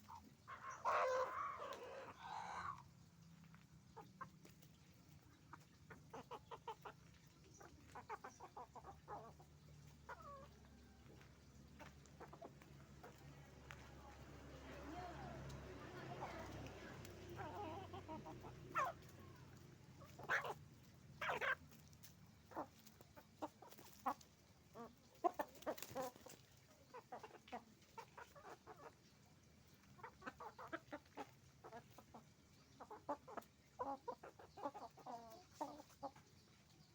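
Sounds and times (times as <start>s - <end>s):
chicken squawks: 0.0s - 2.9s, 5.5s - 10.8s, 17.1s - 29.0s
chickens clucking: 0.0s - 36.9s.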